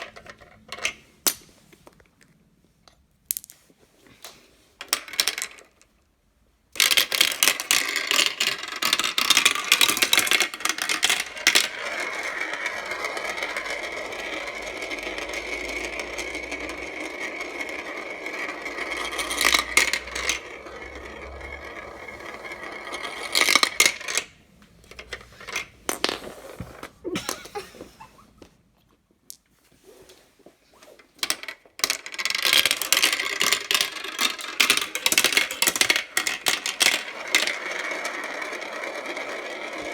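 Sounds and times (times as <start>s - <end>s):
marbles rolling and clattering: 4.8s - 5.8s, 6.8s - 27.5s, 31.2s - 39.9s.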